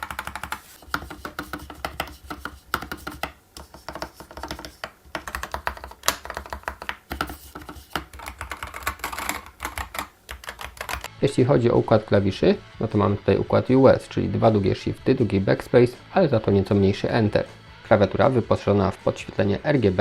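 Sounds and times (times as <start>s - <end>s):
fast typing on mechanical keyboard: 0.0s - 11.1s.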